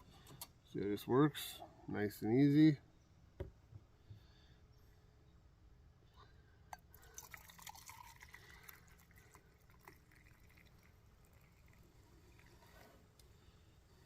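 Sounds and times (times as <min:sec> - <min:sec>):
hot water pouring and dripping: 0:06.8 - 0:13.4.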